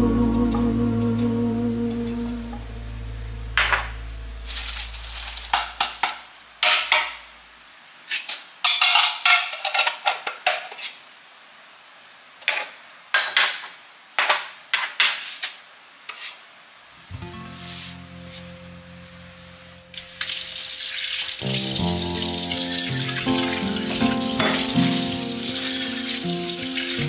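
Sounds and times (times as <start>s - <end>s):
dishes clattering and clinking: 5.5s - 7.2s, 8.6s - 10.8s, 12.4s - 15.2s, 24.2s - 24.9s.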